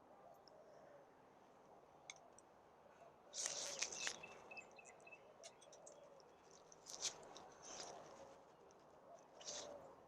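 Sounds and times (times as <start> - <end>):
plant pot rustling and scraping: 3.4 - 4.2, 6.5 - 8.4, 9.4 - 9.8.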